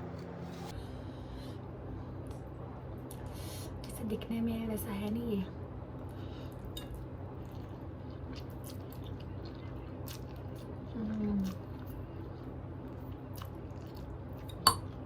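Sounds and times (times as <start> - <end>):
person chewing noodles: 6.0 - 15.0.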